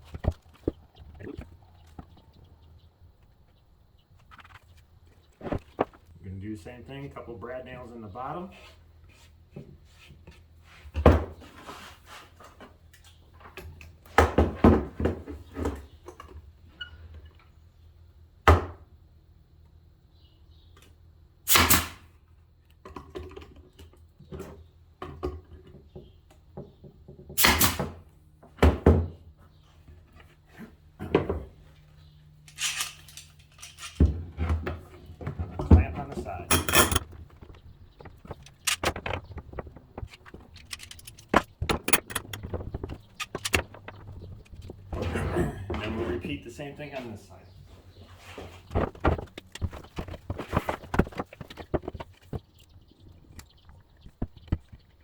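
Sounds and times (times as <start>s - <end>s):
nail gun shots: 21.5s - 22.1s, 27.4s - 28.0s
wood pieces knocking and clattering: 32.5s - 45.0s, 48.6s - 55.0s.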